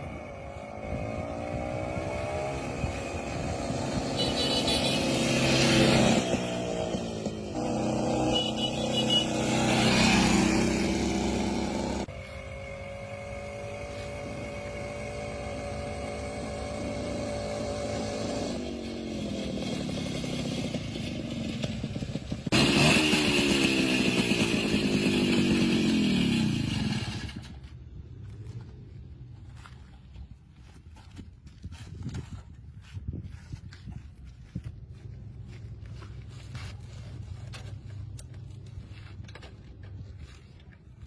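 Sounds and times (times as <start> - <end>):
motorcycle engine running: 0.0 - 28.7.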